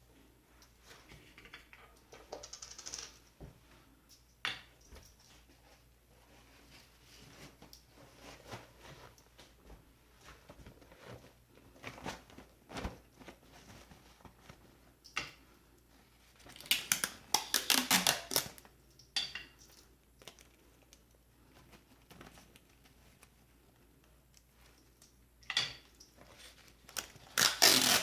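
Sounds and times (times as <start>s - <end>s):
crinkling: 5.3s - 15.0s, 15.9s - 18.7s, 26.1s - 28.0s.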